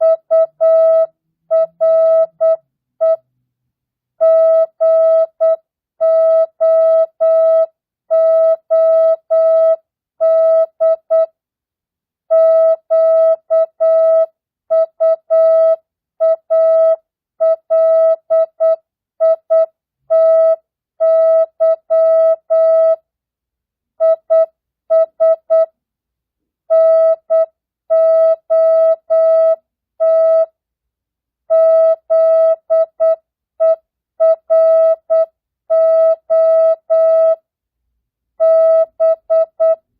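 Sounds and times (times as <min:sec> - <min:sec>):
morse code beeps: 0:00.0 - 0:03.2, 0:12.4 - 0:23.0, 0:26.7 - 0:30.5, 0:31.5 - 0:37.4, 0:38.4 - 0:39.9.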